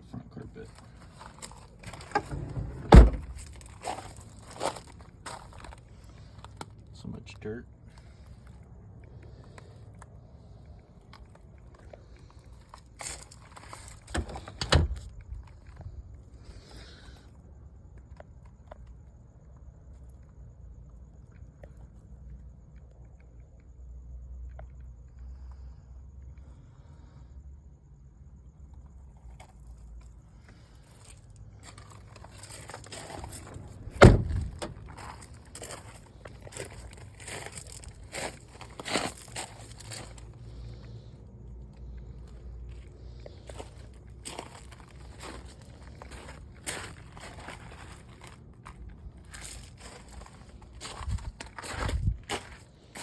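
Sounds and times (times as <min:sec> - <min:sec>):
parts rustling and scraping: 0:00.6 - 0:06.5
loud sharp thump: 0:34.0 - 0:34.7.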